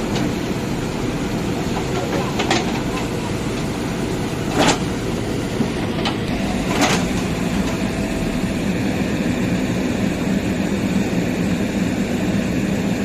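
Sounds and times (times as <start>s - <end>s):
diesel engine running under load: 0.0s - 13.0s.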